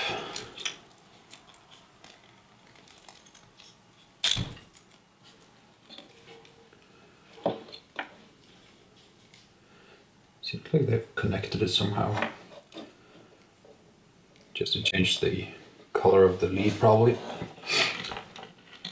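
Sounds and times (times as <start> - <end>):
tape crackling: 0.3 - 6.6.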